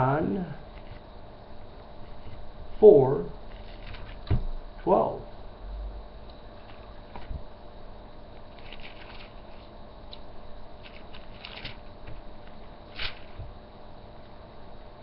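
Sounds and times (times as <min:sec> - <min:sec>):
rustling and light clicks: 0:08.3 - 0:13.6.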